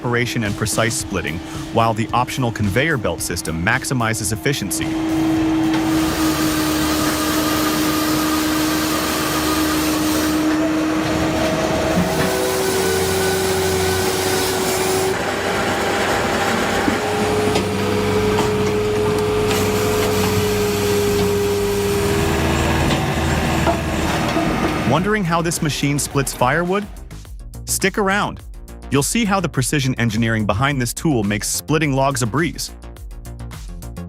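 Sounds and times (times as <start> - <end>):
machine whine: 0.0 - 26.7
firewood processor sawing: 0.0 - 26.9.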